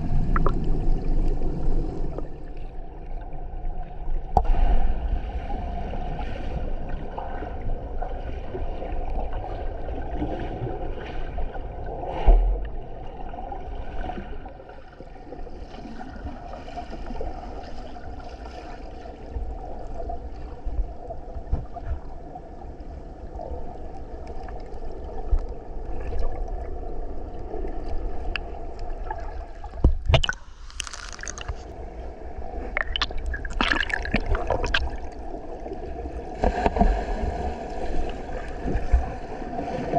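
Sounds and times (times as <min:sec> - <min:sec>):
water rushing and gurgling: 0:00.0 - 0:39.9
sudden splashes or knocks: 0:32.8 - 0:35.1.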